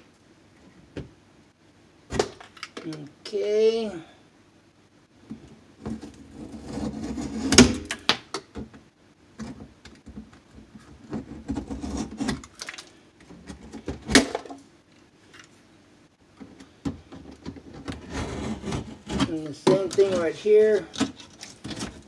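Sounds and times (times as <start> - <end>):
drywall being cut and handled: 5.8 - 8.0, 9.4 - 12.5, 17.0 - 22.0.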